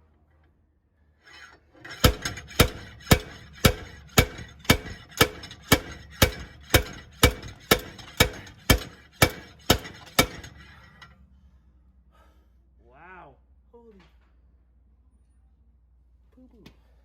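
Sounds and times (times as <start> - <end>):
hammer blows on metal: 2.0 - 10.6.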